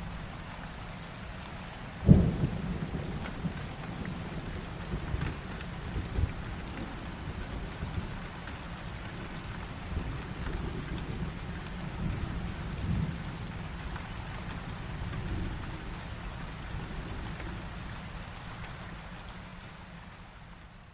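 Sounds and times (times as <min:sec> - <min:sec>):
heavy rain falling: 0:00.0 - 0:20.9
low rolling thunder: 0:02.0 - 0:08.4, 0:09.1 - 0:17.8.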